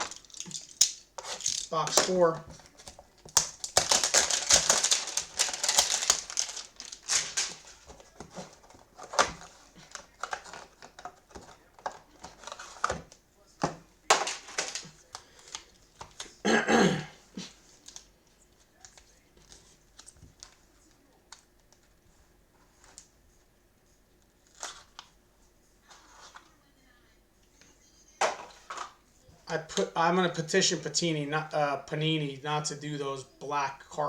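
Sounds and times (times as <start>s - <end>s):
cards clicking and scraping: 0.0s - 16.4s, 24.3s - 25.2s
cardboard tearing: 1.2s - 13.1s.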